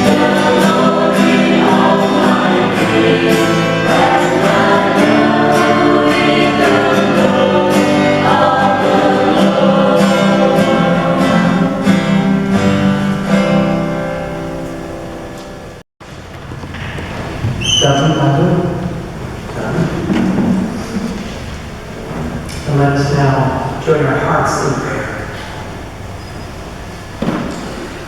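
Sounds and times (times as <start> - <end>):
voices singing with instruments: 0.0 - 13.4.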